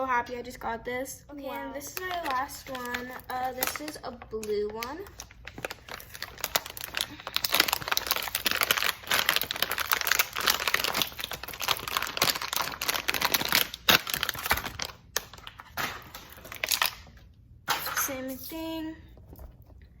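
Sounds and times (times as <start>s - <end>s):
plastic packaging crinkling: 1.6s - 17.2s.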